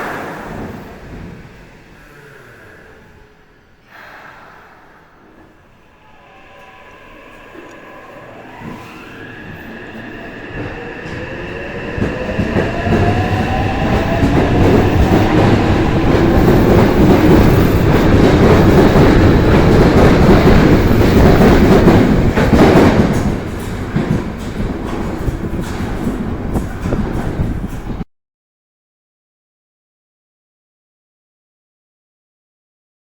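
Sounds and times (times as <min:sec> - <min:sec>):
train rumble and wheel clatter: 0:04.6 - 0:28.0
electric train motors whining: 0:05.7 - 0:18.2.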